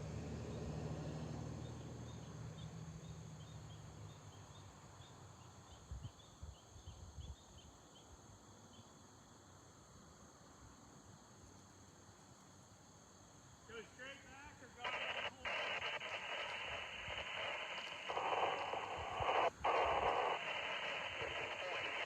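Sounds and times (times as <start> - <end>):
insects chirping and trilling: 1.2 - 13.8, 14.8 - 22.0.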